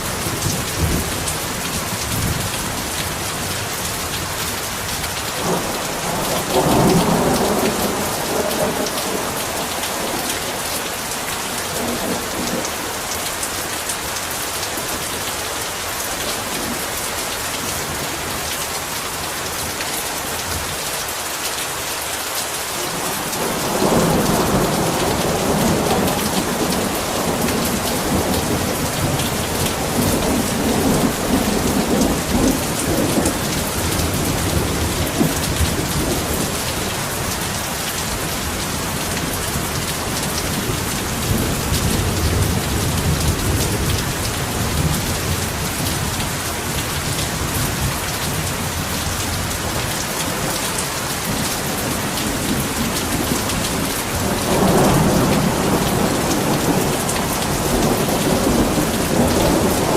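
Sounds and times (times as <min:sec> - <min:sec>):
heavy rain: 0:00.0 - 0:59.9
low rolling thunder: 0:05.4 - 0:12.7, 0:22.9 - 0:49.8, 0:51.2 - 0:59.9.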